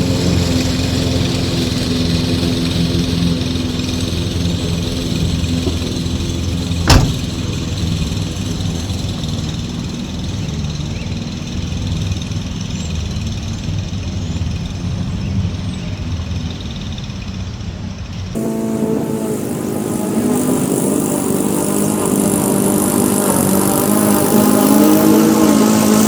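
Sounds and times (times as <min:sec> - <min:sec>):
lawn mower engine running: 0:00.0 - 0:14.4, 0:18.4 - 0:26.0
sharp knock: 0:06.9 - 0:07.4.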